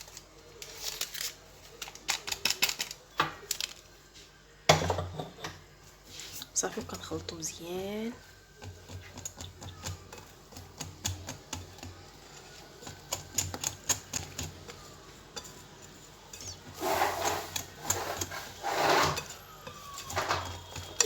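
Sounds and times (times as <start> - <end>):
utensil scraping mixing bowl: 6.0 - 21.0.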